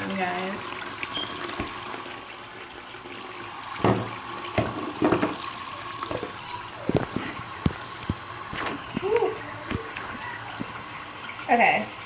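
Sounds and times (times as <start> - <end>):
water running from tap: 0.0 - 12.0
sharp knocks and clatters: 3.8 - 5.4.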